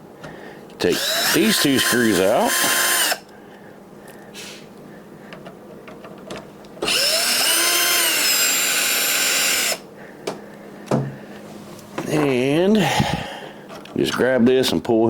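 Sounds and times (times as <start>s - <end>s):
cordless drill spinning: 0.9s - 3.3s, 6.8s - 9.8s.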